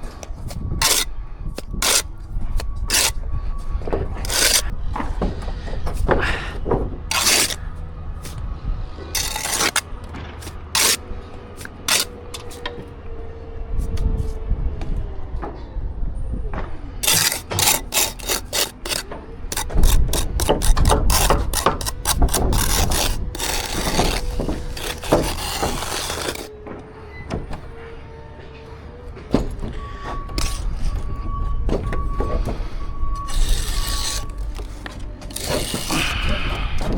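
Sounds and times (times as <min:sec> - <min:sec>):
hand tools scraping and knocking: 0:00.5 - 0:03.2, 0:03.9 - 0:04.7, 0:05.8 - 0:08.4, 0:09.2 - 0:09.8, 0:10.4 - 0:12.8, 0:17.0 - 0:26.5, 0:31.7 - 0:36.9.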